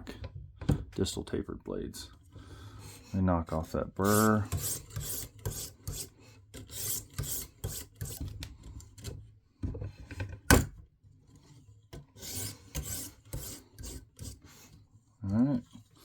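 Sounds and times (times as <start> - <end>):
sharpening stone rasping on knife: 4.0 - 8.2, 12.2 - 14.6.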